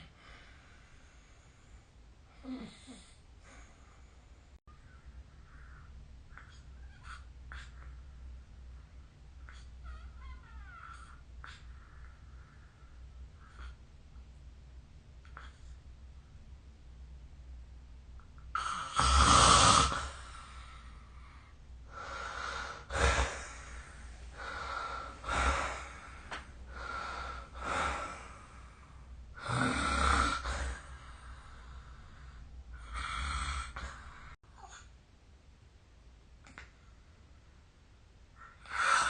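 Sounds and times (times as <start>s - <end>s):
person snoring: 18.6s - 20.5s, 22.0s - 28.7s, 29.4s - 31.1s, 32.8s - 34.4s.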